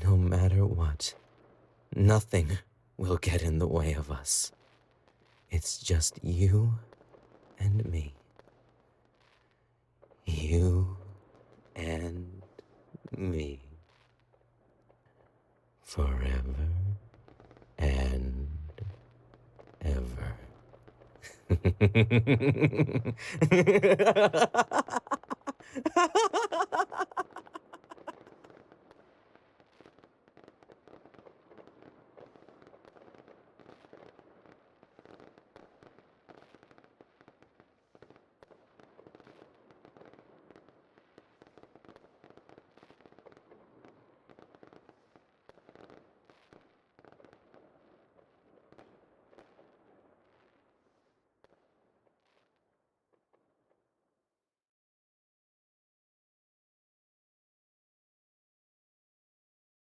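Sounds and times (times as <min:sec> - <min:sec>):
fireworks crackling: 0:19.8 - 0:28.4.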